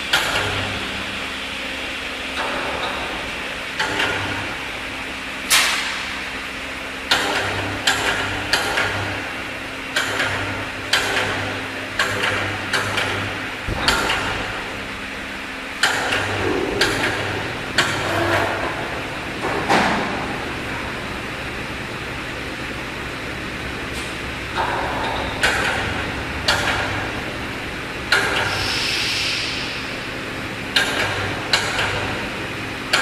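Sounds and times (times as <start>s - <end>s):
steady machine hum: 0.0s - 33.0s
sharp knocks and clanks: 5.5s - 6.2s, 10.0s - 20.9s, 24.0s - 27.4s
low buzz: 13.6s - 19.5s.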